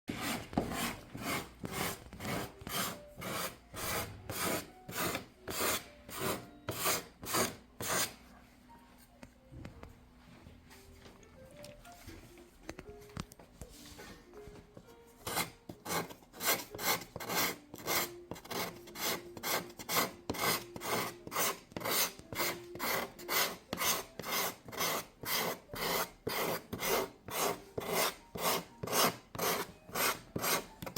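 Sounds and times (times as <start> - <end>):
wood rasping strokes: 0.1 - 8.2, 15.2 - 30.9.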